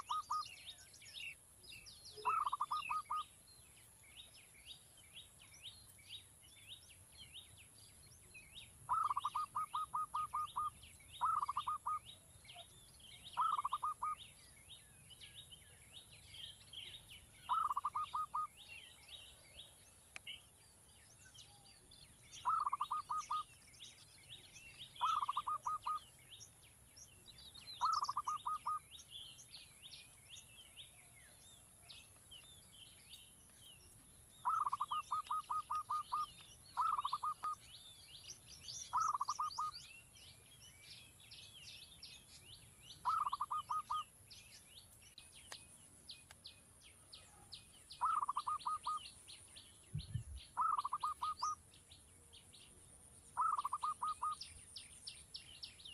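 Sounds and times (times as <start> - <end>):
high bird chirps: 0.0 - 3.4, 8.3 - 19.4, 21.4 - 31.0, 32.0 - 46.4, 47.9 - 51.6, 53.3 - 55.9.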